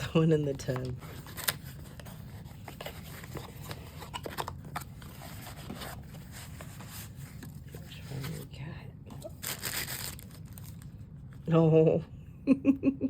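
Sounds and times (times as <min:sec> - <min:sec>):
packaging clicks and rustles: 0:00.6 - 0:06.2.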